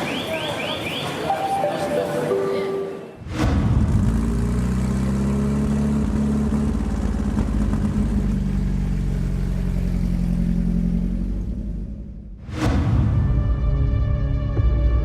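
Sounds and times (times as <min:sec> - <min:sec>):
tank engine droning: 0:03.3 - 0:12.4.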